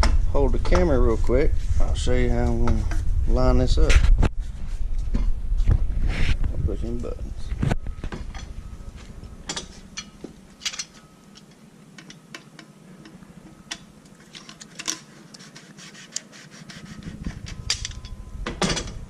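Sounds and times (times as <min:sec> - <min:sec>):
faint scraping of small parts: 0:07.6 - 0:19.0.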